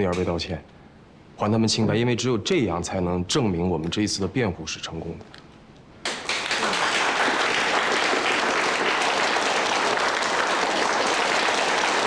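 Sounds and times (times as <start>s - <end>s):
group applauding: 6.0s - 12.0s.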